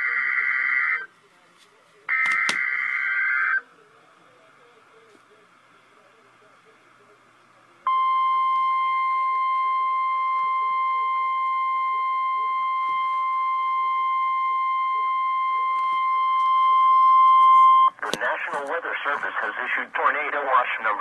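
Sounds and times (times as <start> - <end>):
steady warning alarm tone: 7.9 - 18.0.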